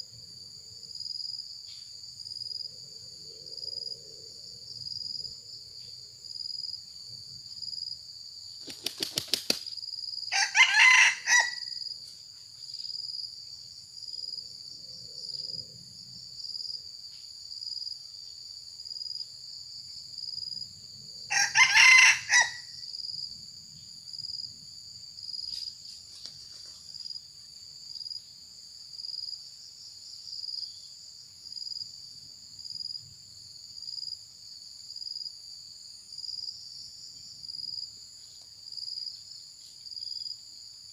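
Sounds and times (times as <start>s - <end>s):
crickets chirring: 0.0s - 40.9s
cockerel flapping wings: 8.6s - 9.8s
cockerel crowing: 10.3s - 11.8s, 21.3s - 22.8s.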